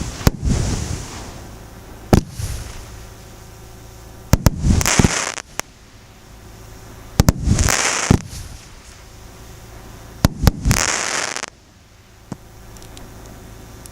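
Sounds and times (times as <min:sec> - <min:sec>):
firework bangs: 0:00.0 - 0:01.3, 0:02.1 - 0:03.2, 0:04.3 - 0:05.8, 0:07.2 - 0:09.0, 0:10.2 - 0:11.6
hissing crackling firework burst: 0:00.0 - 0:06.1, 0:07.2 - 0:09.5, 0:10.2 - 0:11.6.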